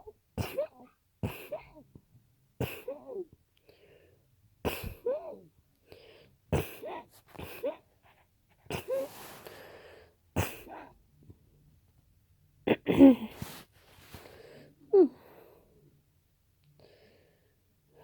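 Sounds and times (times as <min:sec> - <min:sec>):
person sneezing: 0:00.4 - 0:01.8, 0:02.6 - 0:03.2, 0:04.7 - 0:05.4, 0:06.6 - 0:07.8, 0:08.7 - 0:09.4, 0:10.4 - 0:10.9, 0:12.7 - 0:13.7
wheezy breaths: 0:05.8 - 0:07.7, 0:08.8 - 0:10.9, 0:13.3 - 0:15.8.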